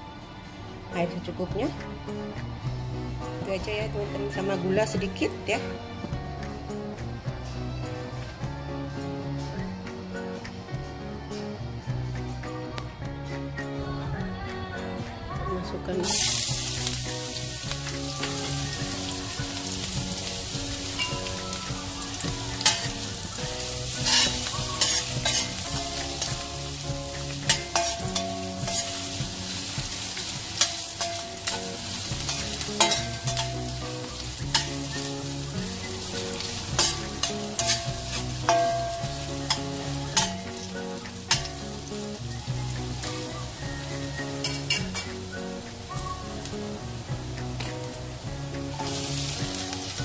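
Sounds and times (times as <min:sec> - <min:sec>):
spices sizzling in hot oil: 0:16.0 - 0:50.0
spatula scraping against pan: 0:24.0 - 0:26.4, 0:36.8 - 0:38.6.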